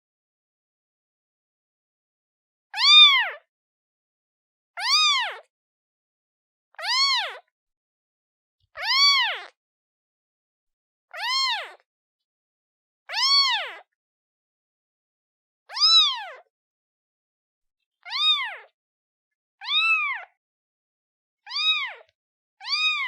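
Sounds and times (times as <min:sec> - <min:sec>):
kitten meowing: 0:02.8 - 0:03.4, 0:04.8 - 0:05.4, 0:06.8 - 0:07.4, 0:08.8 - 0:09.5, 0:11.2 - 0:11.8, 0:13.1 - 0:13.8, 0:15.7 - 0:16.4, 0:18.1 - 0:18.7, 0:19.6 - 0:20.3, 0:21.5 - 0:23.0.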